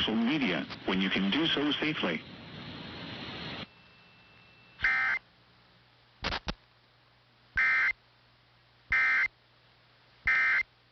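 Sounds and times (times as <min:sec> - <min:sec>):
two-tone data bursts: 0:03.6 - 0:05.2, 0:07.6 - 0:08.0, 0:08.9 - 0:09.3, 0:10.3 - 0:10.7.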